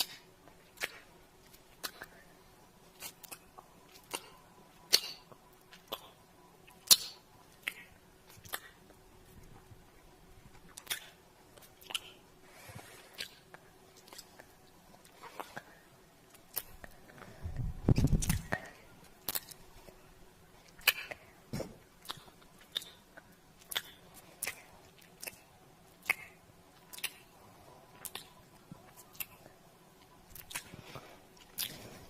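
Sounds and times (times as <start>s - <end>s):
kissing lip smacks: 10.7s - 12.1s, 22.0s - 23.0s, 23.6s - 24.6s, 28.0s - 28.4s, 30.3s - 30.7s.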